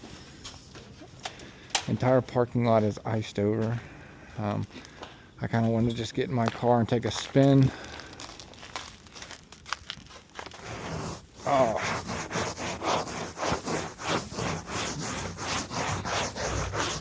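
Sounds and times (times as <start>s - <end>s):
scraping strokes in snow and ice: 10.2s - 17.0s.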